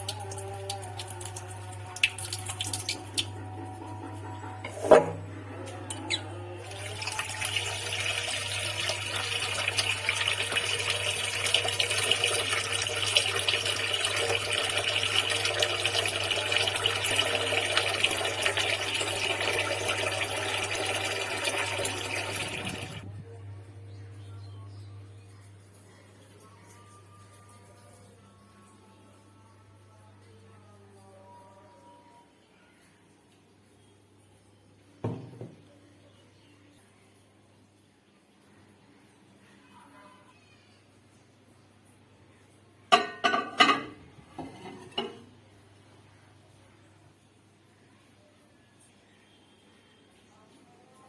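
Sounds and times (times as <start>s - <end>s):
water running from tap: 0.0s - 5.2s, 5.8s - 23.0s.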